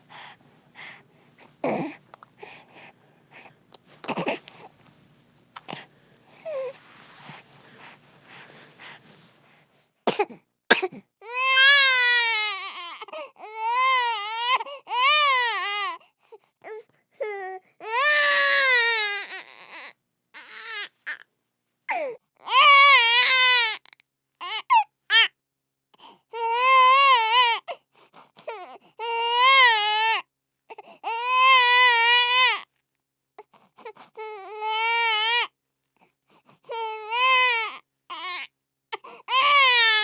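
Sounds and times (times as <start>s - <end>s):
baby crying: 1.6s - 2.0s, 4.0s - 4.5s, 11.2s - 16.0s, 17.2s - 21.2s, 21.9s - 23.8s, 31.0s - 32.6s, 36.7s - 38.5s, 39.3s - 40.0s.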